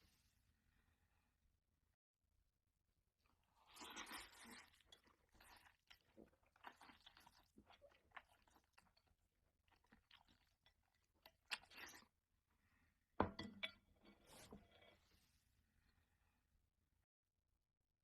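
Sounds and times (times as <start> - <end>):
chewing noodles: 3.3 - 12.2.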